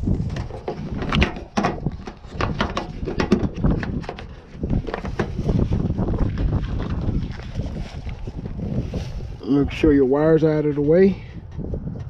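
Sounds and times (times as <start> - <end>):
hands handling hard parts: 0.0 - 8.2.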